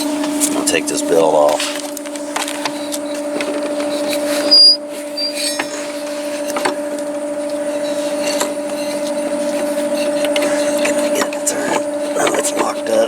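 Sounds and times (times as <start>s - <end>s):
steady droning hum: 0.0s - 13.0s
short high squeak: 4.4s - 6.2s.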